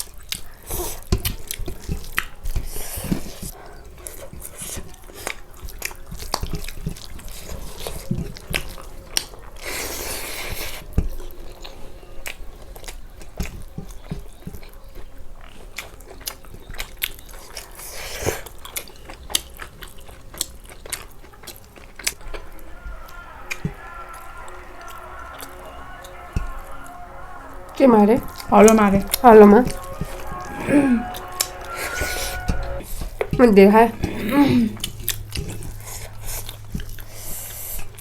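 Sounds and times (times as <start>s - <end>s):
chewing with crunches: 0.0s - 22.4s.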